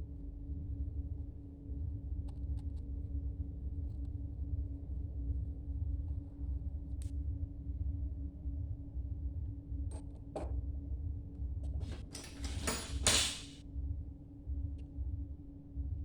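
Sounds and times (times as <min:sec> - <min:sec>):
low electrical hum: 0:00.0 - 0:13.6
scraping handling noise: 0:11.8 - 0:13.6.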